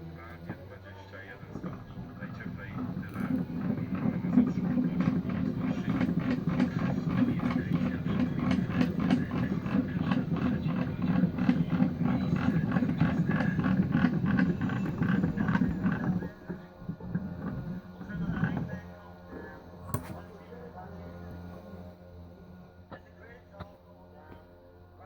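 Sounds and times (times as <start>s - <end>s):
table saw motor running: 0.1s - 23.2s
fast irregular rattling: 1.1s - 18.7s.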